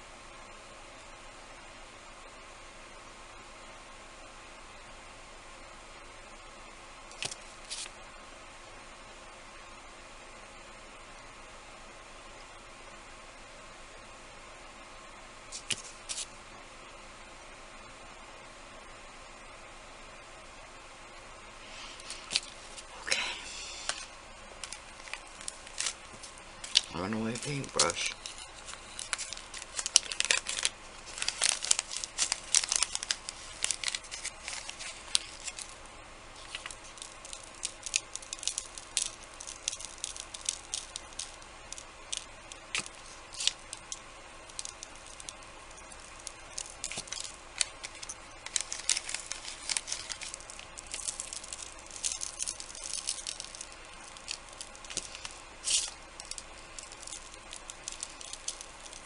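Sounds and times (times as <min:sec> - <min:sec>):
paper crinkling and tearing: 0:07.2 - 0:07.9, 0:15.5 - 0:16.3, 0:23.8 - 0:35.8, 0:36.4 - 0:59.0.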